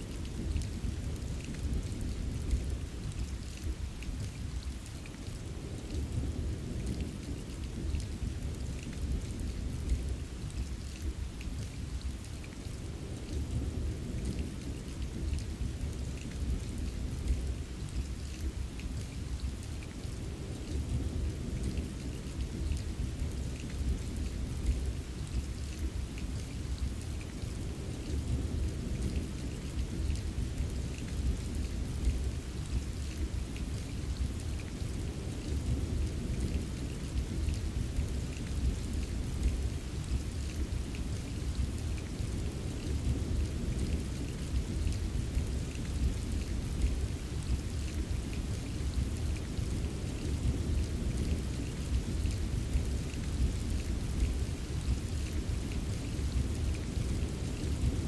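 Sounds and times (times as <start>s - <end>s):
steady rain: 0.0s - 58.0s
rumble of thunder: 12.9s - 19.7s, 20.4s - 58.0s.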